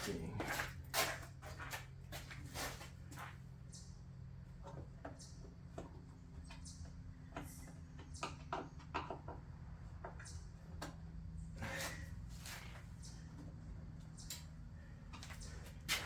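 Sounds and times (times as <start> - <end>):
steady low hum: 0.0 - 8.2.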